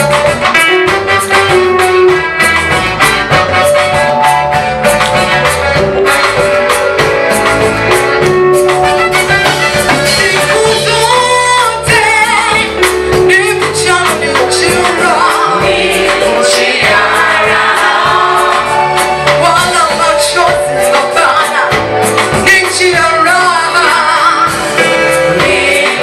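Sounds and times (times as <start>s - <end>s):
bass: 0.0s - 26.0s
drums: 0.0s - 26.0s
choir singing: 14.8s - 19.4s, 23.9s - 26.0s.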